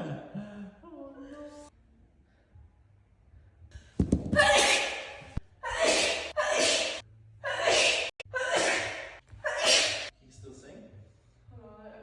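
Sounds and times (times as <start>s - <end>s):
person sneezing: 4.4s - 7.0s, 7.6s - 10.1s.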